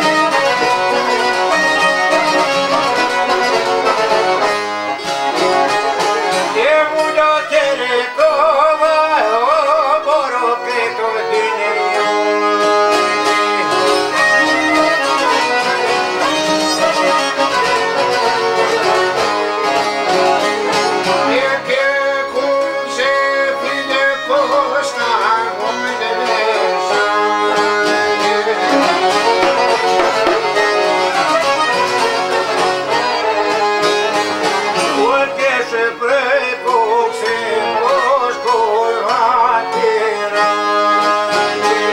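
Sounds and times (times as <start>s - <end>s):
folk music on string instruments: 0.0s - 41.9s.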